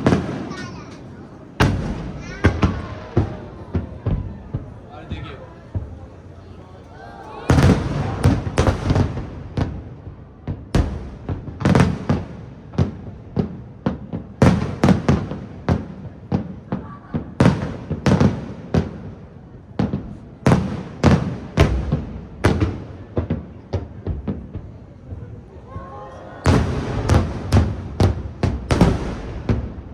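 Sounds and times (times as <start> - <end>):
firework shells booming: 0.0 - 6.6, 7.3 - 16.6, 26.4 - 29.9.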